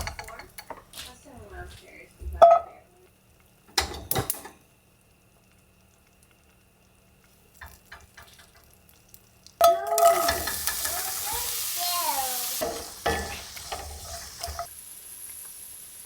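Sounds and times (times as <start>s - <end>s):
pots and utensils clattering: 0.0s - 2.8s, 3.7s - 4.6s, 7.6s - 8.8s, 9.6s - 14.7s
food sizzling in hot pan: 0.0s - 16.0s.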